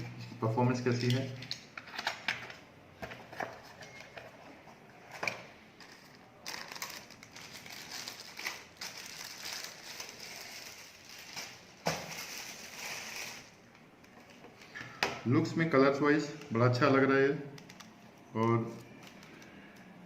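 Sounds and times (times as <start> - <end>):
packaging crinkling: 5.8 - 13.7.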